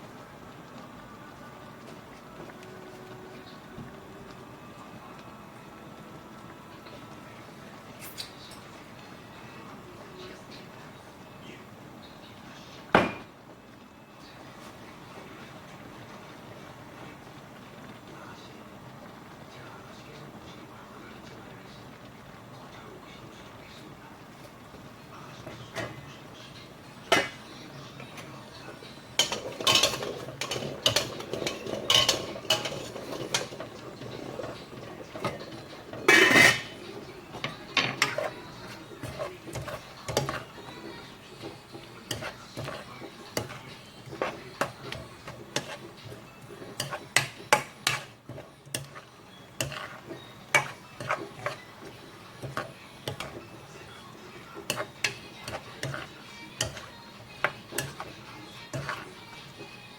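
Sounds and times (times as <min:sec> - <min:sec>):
utensils clinking against pots: 0:07.9 - 0:08.8, 0:12.9 - 0:13.4, 0:25.3 - 0:59.9
utensil scraping: 0:29.2 - 0:59.8.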